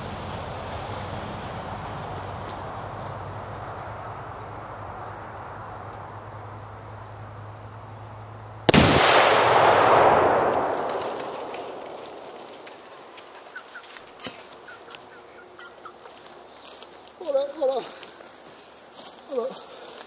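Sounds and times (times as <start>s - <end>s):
low outdoor hiss: 0.0s - 20.0s
explosion blast and rolling boom: 8.7s - 13.1s.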